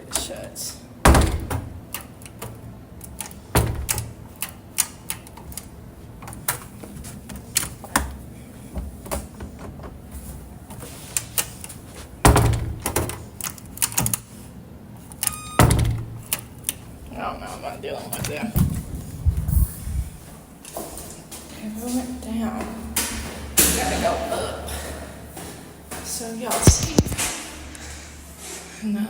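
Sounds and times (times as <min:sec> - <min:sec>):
clicks and knocks of handling: 0:26.6 - 0:27.3
heavy thumps: 0:26.6 - 0:27.7.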